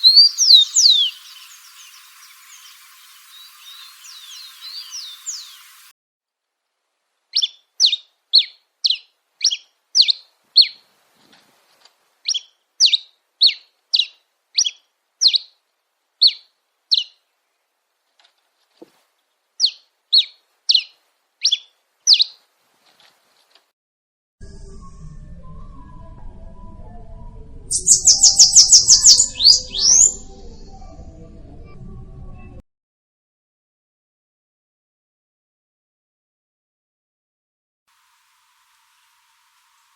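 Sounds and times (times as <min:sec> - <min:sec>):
bird chirping: 0:00.0 - 0:05.9, 0:07.3 - 0:10.8, 0:12.2 - 0:15.6, 0:16.2 - 0:17.2, 0:19.6 - 0:22.4, 0:27.7 - 0:31.0.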